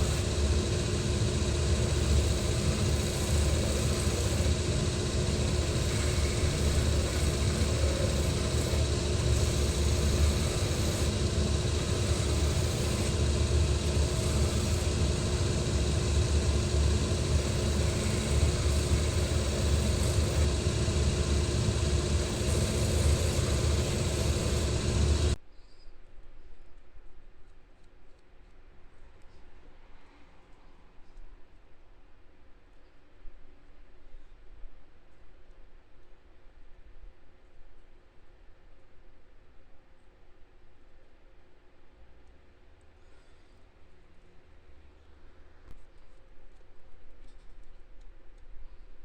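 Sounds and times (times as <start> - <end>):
workshop machine humming: 0.0 - 25.4.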